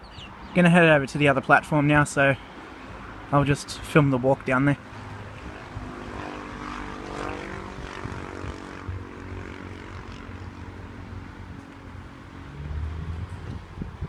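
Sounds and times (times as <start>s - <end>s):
distant engine droning: 4.8s - 13.4s.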